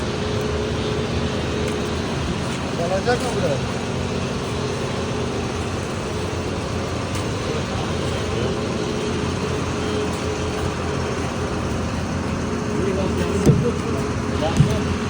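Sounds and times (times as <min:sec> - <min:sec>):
machine drone: 0:00.0 - 0:15.0.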